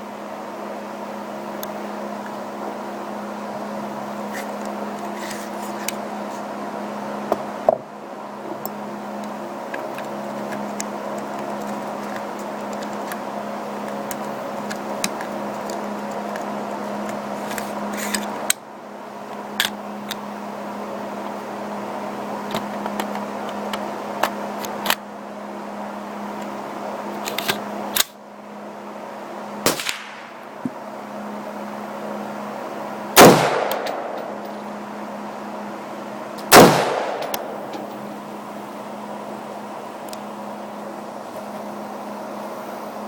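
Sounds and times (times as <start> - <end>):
steady low hum: 0.0 - 43.0
rifle shots: 29.7 - 30.3, 33.2 - 34.4, 36.5 - 37.8.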